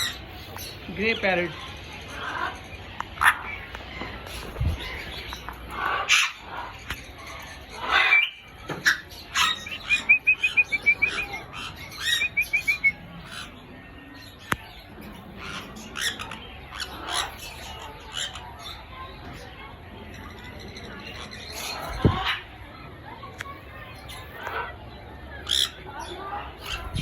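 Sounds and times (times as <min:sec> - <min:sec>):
parrot squawks and whistles: 0:08.0 - 0:13.5
parrot rapid chirps: 0:09.3 - 0:13.4.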